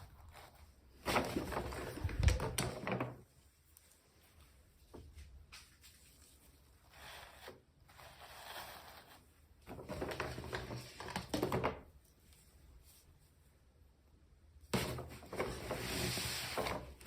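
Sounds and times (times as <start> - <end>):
toy packaging rustling and scraping: 14.8 - 17.0.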